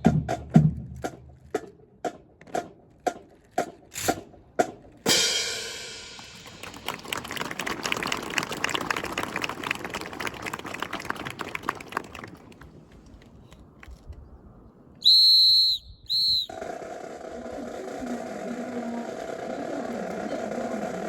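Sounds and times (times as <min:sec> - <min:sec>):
whistle blasts: 0:15.0 - 0:16.6.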